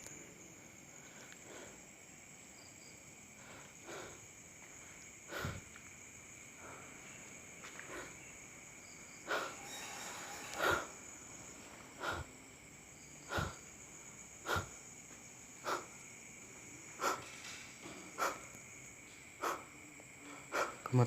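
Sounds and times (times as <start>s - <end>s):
slow footsteps on debris: 7.0s - 7.9s.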